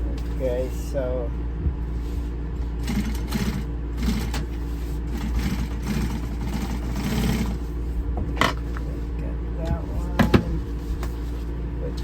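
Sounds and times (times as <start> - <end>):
motor humming: 0.0 - 12.0
sewing machine stitching: 2.8 - 7.6.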